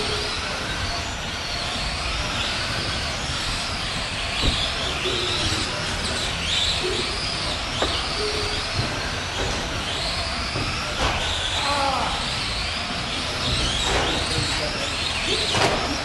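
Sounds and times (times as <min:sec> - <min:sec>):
electric motor and gear whine: 0:00.0 - 0:16.0
sharp knocks: 0:04.4 - 0:05.2.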